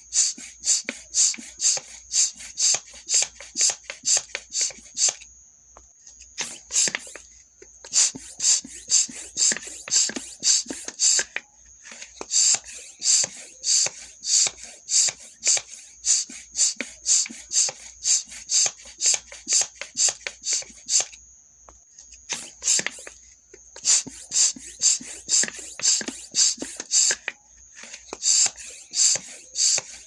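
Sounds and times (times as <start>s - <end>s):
bicycle pump strokes hissing: 0.0s - 5.2s, 6.4s - 21.2s, 22.2s - 30.0s
high air whistle: 8.0s - 11.3s, 11.9s - 21.1s, 23.8s - 27.2s, 27.8s - 30.0s.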